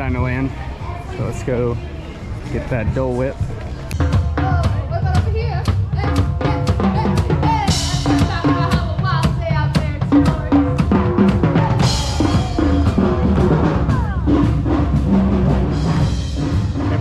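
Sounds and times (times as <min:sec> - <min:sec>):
music with drum-kit beat: 0:03.9 - 0:17.0.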